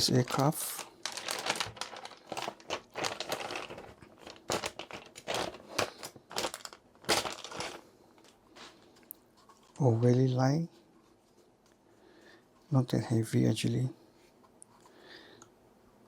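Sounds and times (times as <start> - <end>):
packaging crinkling and rustling: 0.0 - 9.8.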